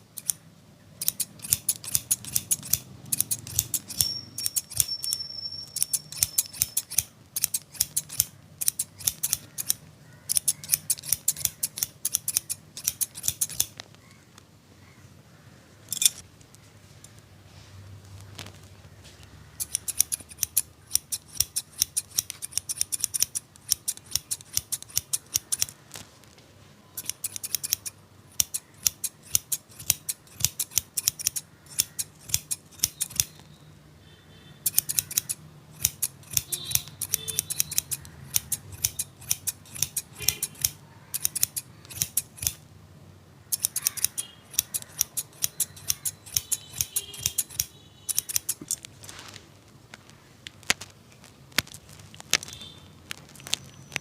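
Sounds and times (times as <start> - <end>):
scissors snipping hair: 0.1 - 0.4, 1.0 - 5.2, 5.8 - 13.8, 19.6 - 25.8, 27.0 - 33.4, 34.6 - 42.6, 43.5 - 48.9.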